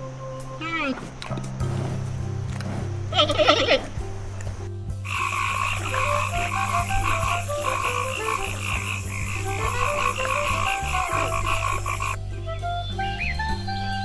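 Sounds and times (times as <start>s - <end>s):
background music with bass: 0.0s - 14.0s
frogs calling in chorus: 5.0s - 12.2s.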